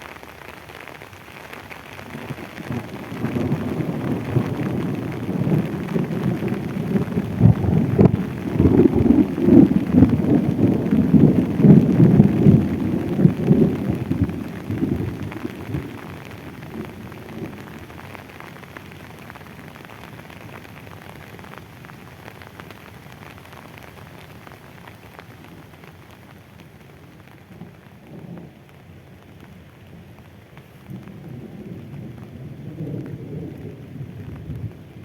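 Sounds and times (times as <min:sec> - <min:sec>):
steady rain pattering: 0:00.0 - 0:35.0
thunder rumbling: 0:02.0 - 0:20.7, 0:30.7 - 0:35.0.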